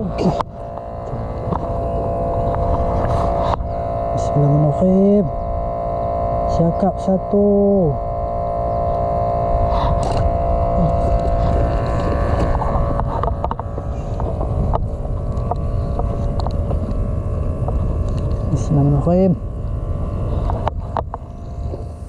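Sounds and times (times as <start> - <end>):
boat engine droning: 0.0 - 22.0
wind on microphone: 0.0 - 22.0.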